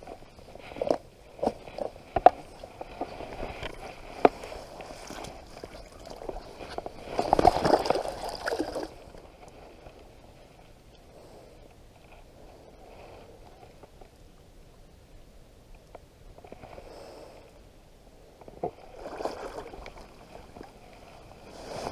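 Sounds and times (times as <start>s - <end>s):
water splashing and sloshing: 0.0s - 10.6s, 18.5s - 21.9s.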